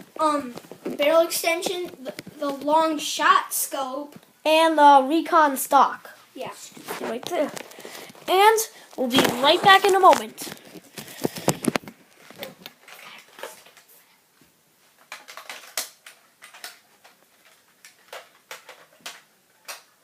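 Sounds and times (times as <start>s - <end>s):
objects clicking and knocking: 15.0s - 20.0s.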